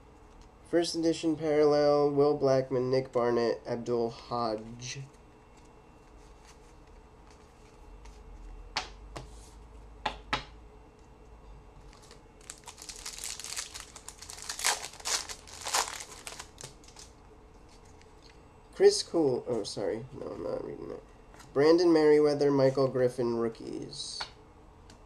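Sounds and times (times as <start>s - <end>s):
card pack wrapper crinkling and tearing: 11.9s - 17.2s.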